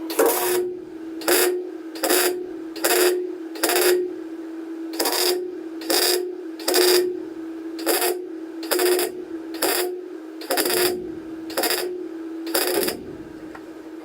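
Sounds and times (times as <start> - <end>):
welder humming: 0.0 - 14.0
crackling welding arc: 0.1 - 4.0, 4.9 - 7.1, 7.8 - 11.9, 12.5 - 13.4.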